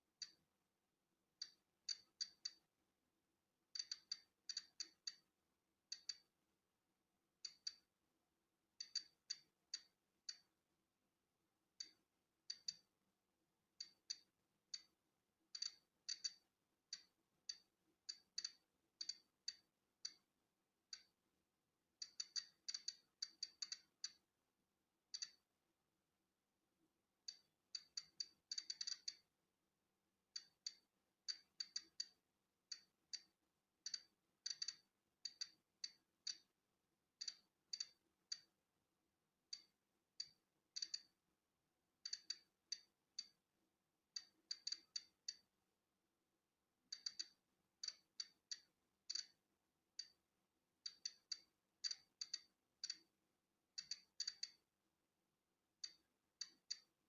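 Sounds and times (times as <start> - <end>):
geiger counter clicking: 3.8 - 5.3, 5.9 - 6.3, 8.8 - 10.5, 11.8 - 12.9, 13.8 - 14.9, 15.6 - 20.3, 22.0 - 24.2, 25.1 - 25.4, 27.3 - 29.2, 30.3 - 36.5, 37.2 - 38.5, 39.5 - 41.1, 42.0 - 43.4, 44.2 - 45.5, 46.9 - 49.4, 50.0 - 50.2, 50.8 - 53.1, 53.8 - 54.6, 55.8 - 56.9.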